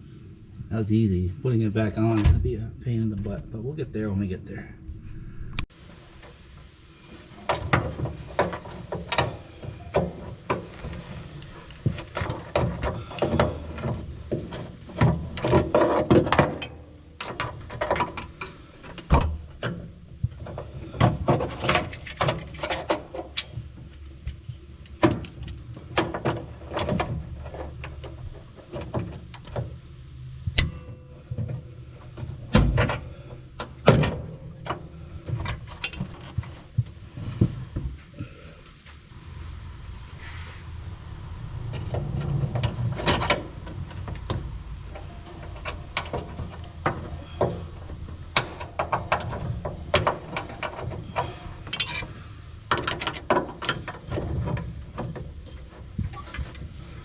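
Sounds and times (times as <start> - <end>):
metal tools clanking and rattling: 7.4 - 19.0, 19.6 - 23.6, 30.6 - 37.4, 41.6 - 57.0.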